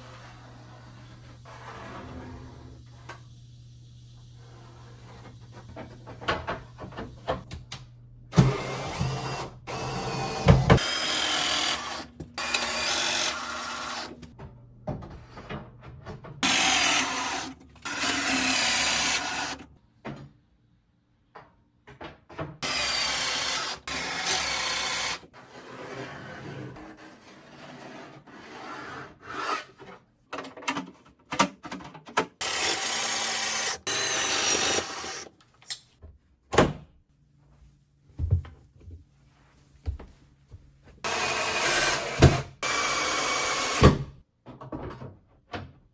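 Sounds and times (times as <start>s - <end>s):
power drill driving into wood: 8.4s - 14.3s, 16.4s - 19.6s, 22.6s - 25.2s, 32.4s - 35.3s, 41.1s - 44.1s
knocks and handling sounds: 38.1s - 41.0s.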